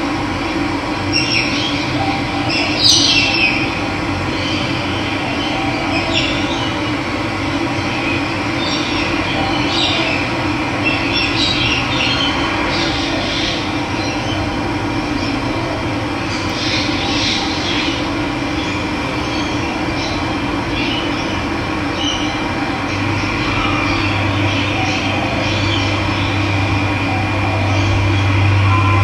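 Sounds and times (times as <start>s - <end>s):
birds chirping: 1.1s - 7.1s, 16.2s - 29.0s.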